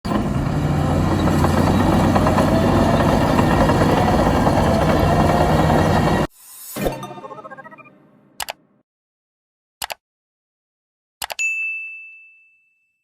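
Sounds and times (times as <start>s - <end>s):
heavy machine engine humming: 0.1s - 6.3s.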